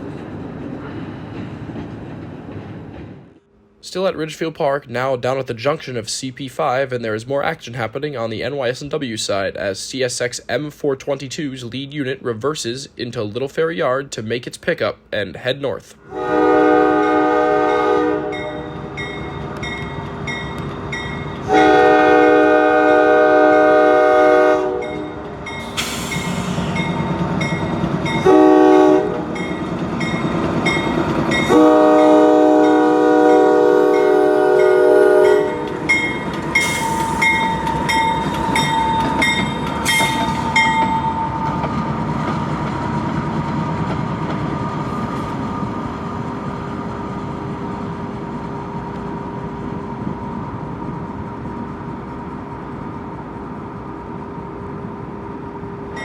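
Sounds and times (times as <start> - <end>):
locomotive air horn blasts: 16.0 - 18.7, 21.4 - 25.2, 28.2 - 29.3, 31.5 - 35.7
locomotive running and rolling: 29.0 - 32.0, 35.2 - 52.7
bell ringing: 35.3 - 41.6.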